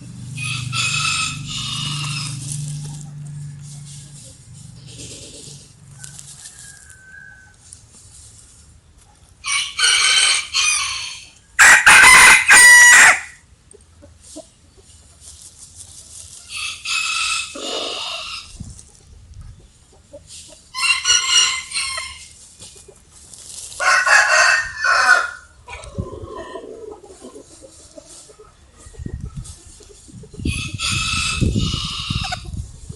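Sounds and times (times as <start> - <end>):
roosters crowing: 0.0 - 7.9, 9.4 - 13.4, 16.2 - 18.6, 20.6 - 22.5, 23.7 - 29.6, 30.3 - 32.6.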